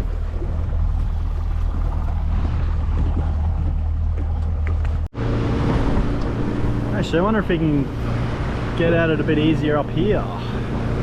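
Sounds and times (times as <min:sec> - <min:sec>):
boat engine drone: 0:00.0 - 0:11.0
wind and water hiss: 0:05.3 - 0:11.0.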